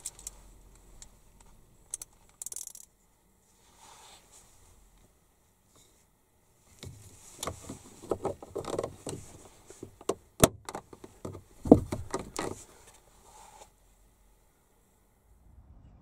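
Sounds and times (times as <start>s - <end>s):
knocks and clunks on car door: 11.6s - 12.4s.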